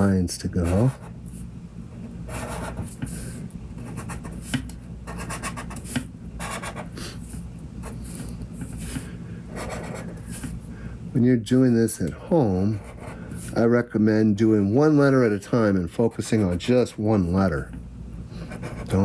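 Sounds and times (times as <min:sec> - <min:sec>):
steady low hum: 0:00.0 - 0:19.0
pen scratching on paper: 0:00.6 - 0:01.1, 0:02.3 - 0:10.6, 0:12.7 - 0:13.6, 0:16.1 - 0:17.4, 0:18.4 - 0:19.0.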